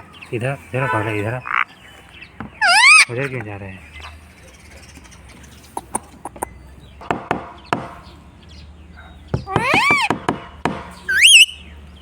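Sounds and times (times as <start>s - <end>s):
parrot whistled call: 2.6s - 3.1s, 9.5s - 10.1s, 11.1s - 11.6s
light taps and clicks: 4.8s - 6.6s.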